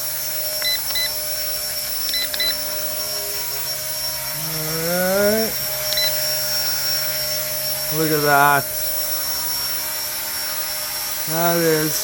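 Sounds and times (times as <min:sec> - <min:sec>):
toy helicopter rotor whine: 0:00.0 - 0:12.0
short electronic beeps: 0:05.9 - 0:06.7.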